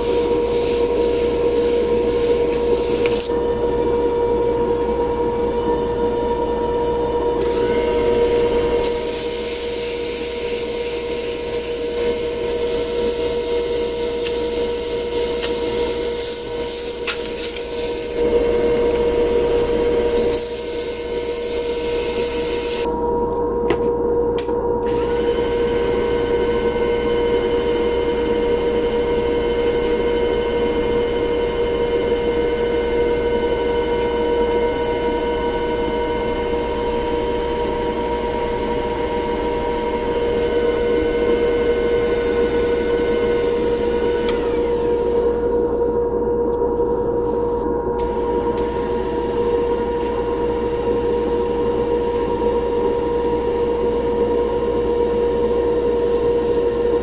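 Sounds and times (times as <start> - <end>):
power tool motor running: 0.0 - 23.0, 24.8 - 45.9.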